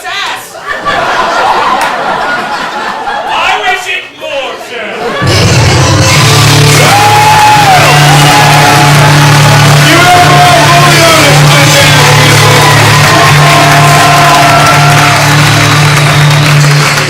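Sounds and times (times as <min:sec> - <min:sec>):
bass line: 0:05.2 - 0:17.0
rock music: 0:05.2 - 0:17.0.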